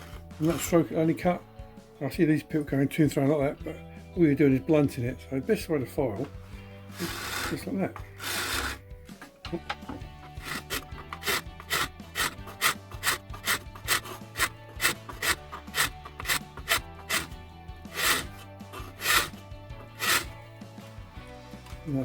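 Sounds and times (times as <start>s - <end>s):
file rasping plastic: 6.9s - 8.8s, 9.7s - 20.4s.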